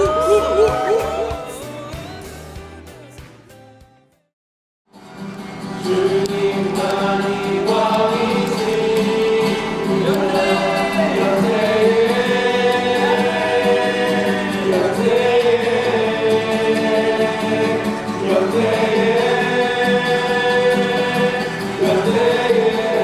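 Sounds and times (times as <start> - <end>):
accompanying music: 0.0 - 3.6, 5.0 - 23.0
group singing worship song: 5.8 - 23.0.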